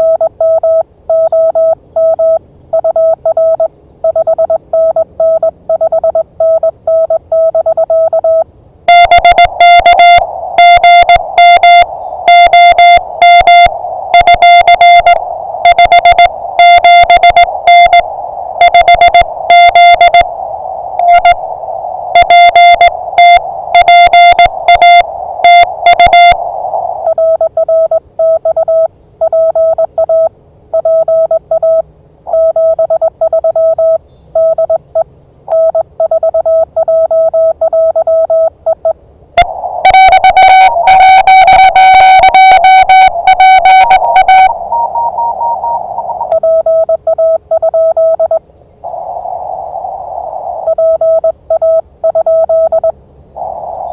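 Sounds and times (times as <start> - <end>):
lower-pitched morse code reply: 0.0 - 20.3, 21.0 - 21.5, 22.1 - 26.4, 27.0 - 48.4, 50.6 - 52.9
faint higher-pitched morse code: 0.0 - 20.4, 21.0 - 21.5, 22.1 - 48.4, 50.3 - 53.9
loud morse code tones: 0.0 - 34.8, 35.5 - 49.0, 50.2 - 53.9
radio band noise hiss: 8.4 - 27.6, 39.4 - 46.4, 48.6 - 51.2, 53.3 - 53.9.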